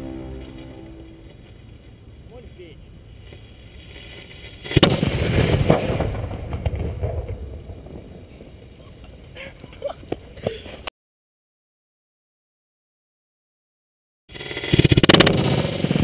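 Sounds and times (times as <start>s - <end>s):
explosion crack: 4.7s - 8.1s.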